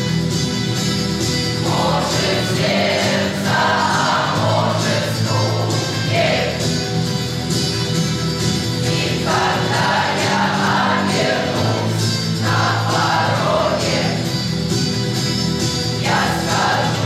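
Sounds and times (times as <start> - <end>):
youth choir singing: 1.6 - 6.8, 8.8 - 14.4, 15.9 - 17.0.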